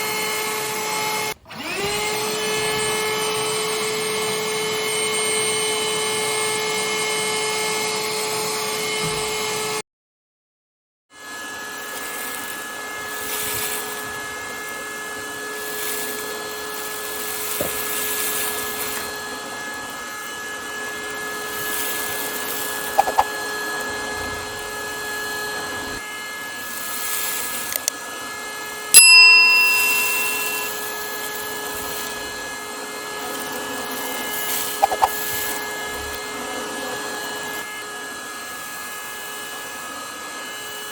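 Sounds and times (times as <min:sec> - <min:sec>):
hand-held vacuum cleaner whine: 0:00.0 - 0:09.8, 0:11.2 - 0:40.9
sharp ringing clink: 0:29.0 - 0:31.0.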